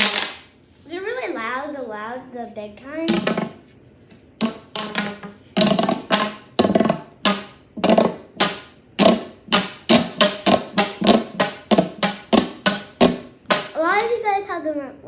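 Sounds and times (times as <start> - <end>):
plastic pop tubes popping: 0.0 - 0.5, 3.1 - 3.6, 4.4 - 13.8.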